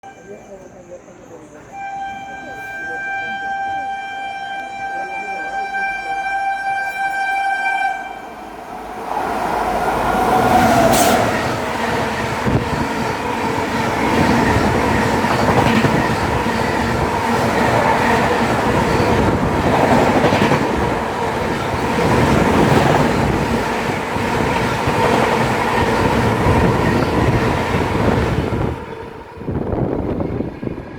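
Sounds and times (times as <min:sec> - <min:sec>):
train passing: 0:00.2 - 0:30.9
coaches clattering over rails: 0:08.6 - 0:30.8.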